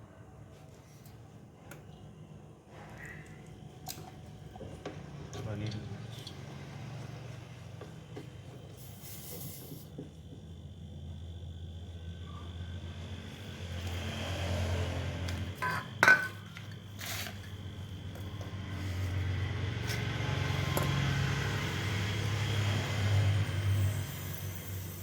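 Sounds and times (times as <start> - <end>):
motor humming: 4.3 - 25.0.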